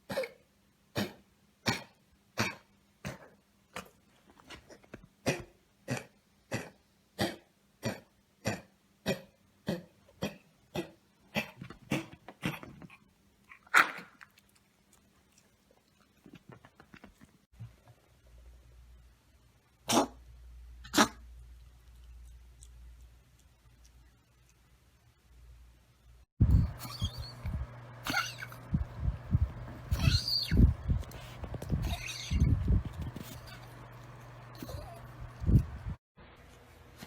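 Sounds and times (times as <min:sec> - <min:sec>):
dog coughing: 0:00.0 - 0:03.4, 0:05.2 - 0:13.0, 0:19.9 - 0:20.2, 0:20.9 - 0:21.2, 0:26.5 - 0:27.3, 0:28.0 - 0:28.8, 0:29.9 - 0:33.7.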